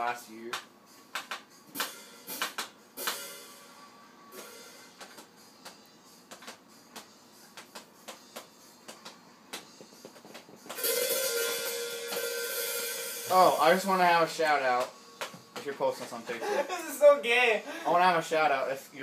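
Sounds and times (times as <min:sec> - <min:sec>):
cymbal ringing: 0:10.8 - 0:13.9.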